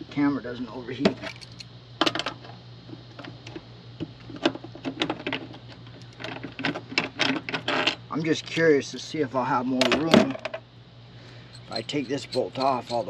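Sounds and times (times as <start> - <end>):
metallic chain links clinking: 1.2 - 1.7, 11.5 - 13.0.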